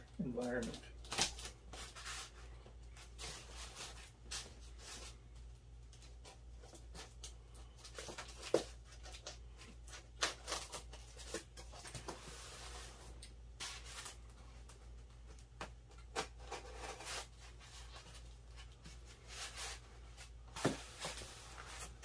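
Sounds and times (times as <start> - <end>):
cardboard box and packing rustling: 0.4 - 22.0.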